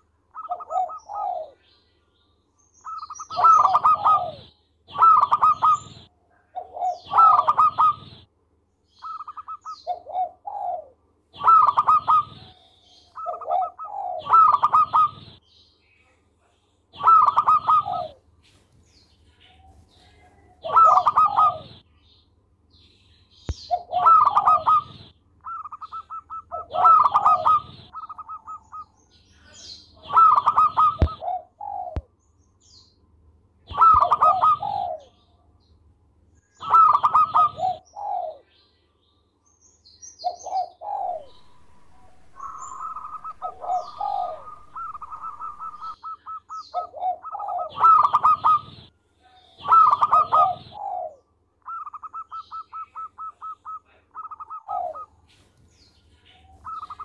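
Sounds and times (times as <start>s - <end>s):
doves cooing: 0.0s - 1.6s, 2.8s - 8.3s, 9.0s - 15.4s, 16.9s - 18.2s, 19.3s - 21.8s, 23.6s - 32.1s, 33.7s - 35.2s, 36.6s - 38.5s, 40.2s - 55.5s, 56.4s - 57.0s.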